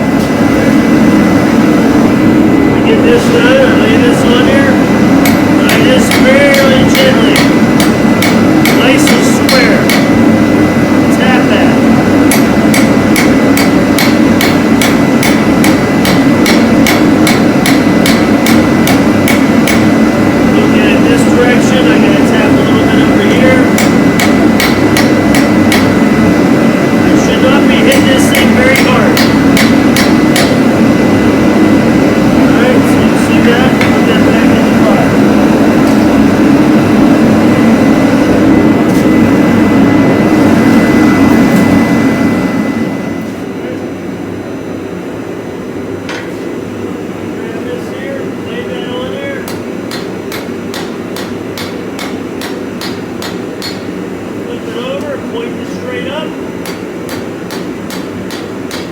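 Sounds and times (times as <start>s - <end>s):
hammer striking steel on anvil: 5.2s - 10.2s, 12.3s - 19.9s, 23.7s - 26.0s, 27.8s - 30.6s, 49.4s - 54.0s, 56.6s - 58.9s.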